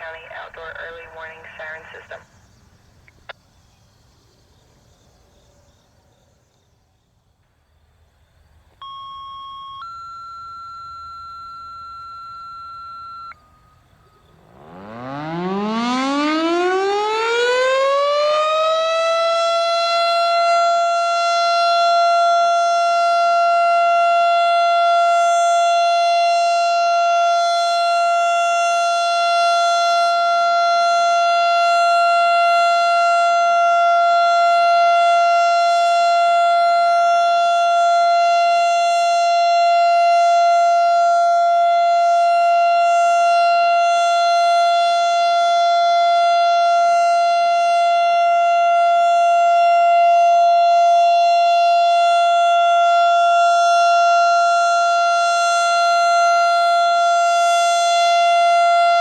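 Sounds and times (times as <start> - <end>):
electronic radio beep tone: 0.0 - 2.2
outdoor warning siren rising: 8.8 - 59.0.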